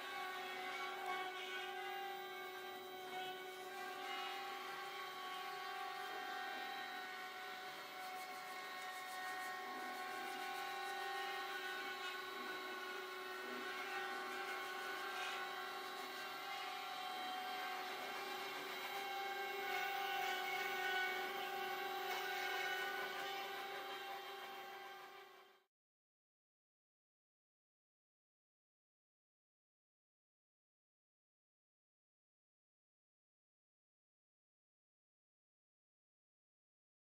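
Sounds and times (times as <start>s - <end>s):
electric motor whine: 0.0s - 25.6s.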